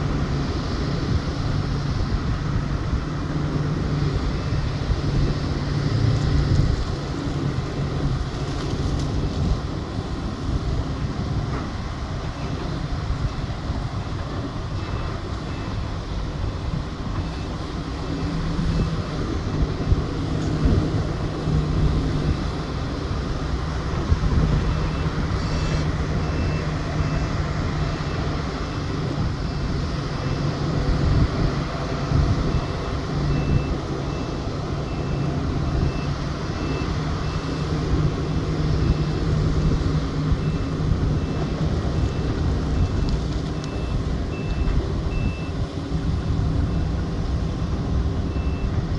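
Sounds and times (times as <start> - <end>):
heavy diesel engines droning: 0.0 - 48.9
reversing alarm beeping: 24.6 - 27.3, 32.0 - 37.8, 40.3 - 45.6, 48.3 - 48.8.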